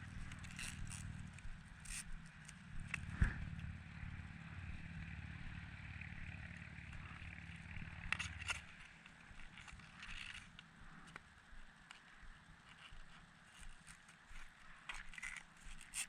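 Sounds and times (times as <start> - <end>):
zip tie ratcheting: 0.0 - 3.7, 7.8 - 10.6, 14.8 - 16.0.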